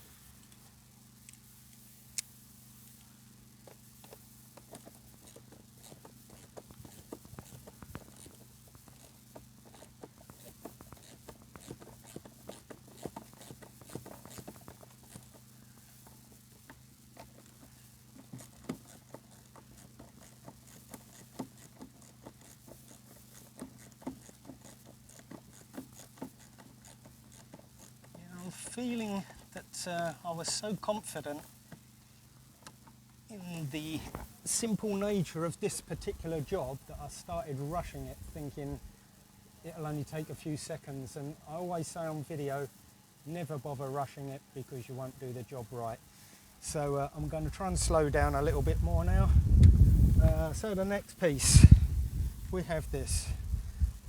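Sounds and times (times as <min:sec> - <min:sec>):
steady low hum: 0:27.7 - 0:54.0.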